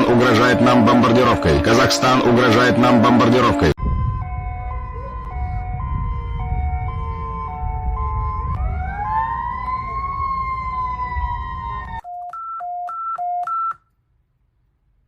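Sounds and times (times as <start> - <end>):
two-tone siren wailing: 0.0 - 12.2
low rumble: 3.8 - 12.0.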